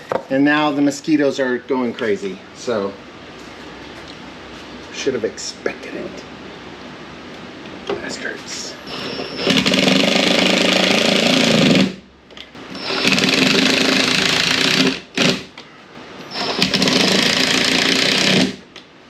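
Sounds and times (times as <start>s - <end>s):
power drill running: 8.9s - 12.0s, 12.6s - 15.5s, 16.3s - 18.6s.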